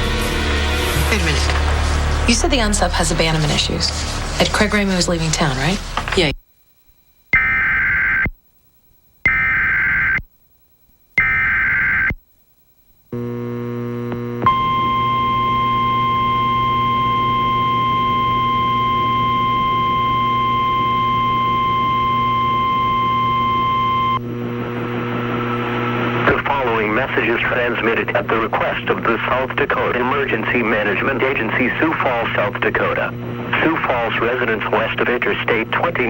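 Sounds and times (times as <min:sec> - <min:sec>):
mains hum: 0:00.0 - 0:36.0
warbling digital data bursts: 0:07.3 - 0:08.4, 0:09.2 - 0:10.3, 0:11.2 - 0:12.2
steady single-pitch attention tone: 0:14.4 - 0:24.2.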